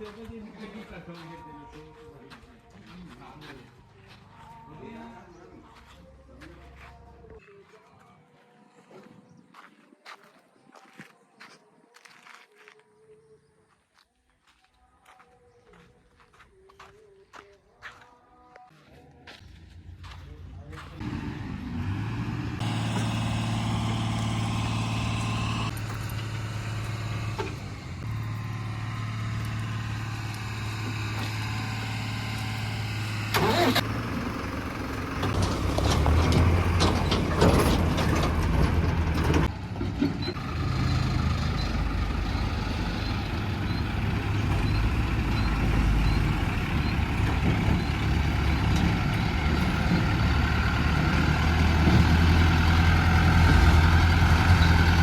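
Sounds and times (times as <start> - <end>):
diesel engine running: 19.4 - 55.0
clattering scraping noise: 35.2 - 40.3.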